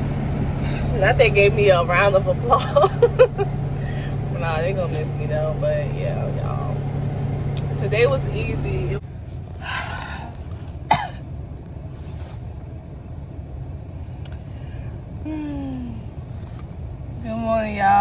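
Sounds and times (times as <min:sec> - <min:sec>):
engine idling: 0:00.0 - 0:18.0
woman coughing: 0:10.9 - 0:11.2.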